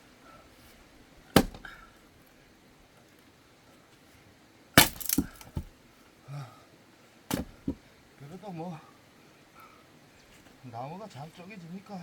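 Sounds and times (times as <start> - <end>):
split wood pieces falling: 1.3 - 1.8, 4.8 - 5.7, 7.3 - 7.8
axe splitting firewood: 1.3 - 1.9, 4.8 - 5.8, 7.3 - 7.8.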